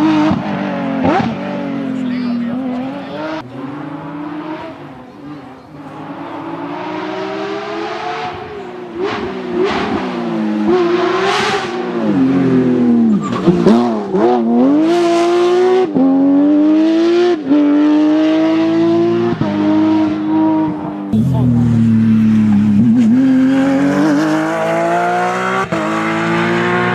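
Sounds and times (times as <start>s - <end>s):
car engine accelerating hard: 0.0s - 26.9s
engine upshifts: 0.0s - 26.9s.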